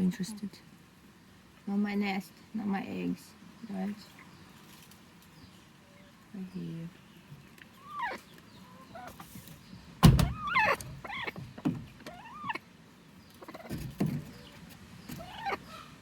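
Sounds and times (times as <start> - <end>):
hen squawking: 7.8 - 9.3, 10.2 - 12.6, 13.4 - 13.8, 15.1 - 16.0
sharp thump: 10.0 - 10.4.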